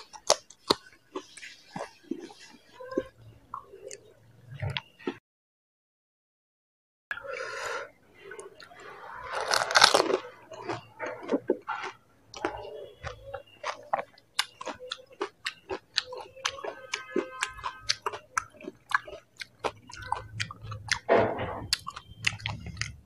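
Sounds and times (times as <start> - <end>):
wet chewing: 0.0 - 5.2, 8.3 - 23.0
bite into crisp food: 9.2 - 19.8.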